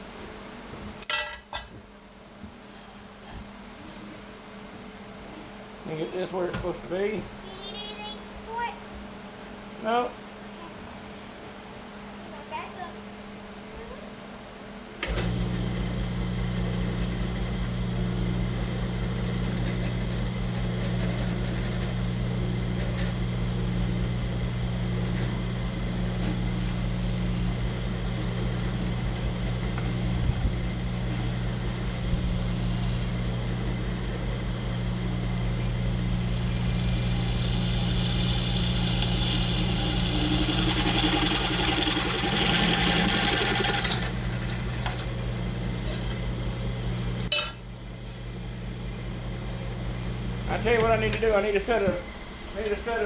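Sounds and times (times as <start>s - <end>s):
drill press motor humming: 15.0s - 53.0s
drill bit grinding into steel: 35.3s - 46.4s.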